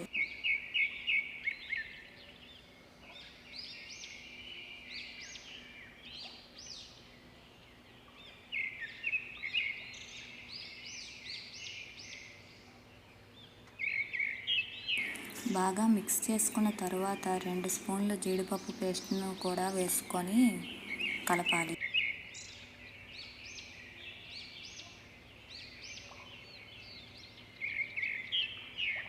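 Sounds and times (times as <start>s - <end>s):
small birds chirping: 0.0s - 29.0s
faint low hum: 15.0s - 21.8s.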